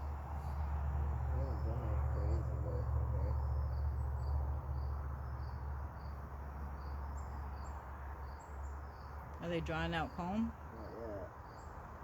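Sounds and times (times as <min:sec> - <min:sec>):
crickets chirping: 0:00.0 - 0:09.3.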